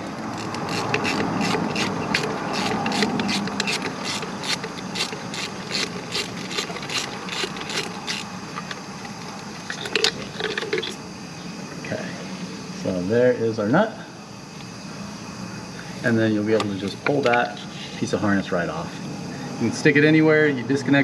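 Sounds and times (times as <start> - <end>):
hand ratchet clicking: 0.0 - 11.0.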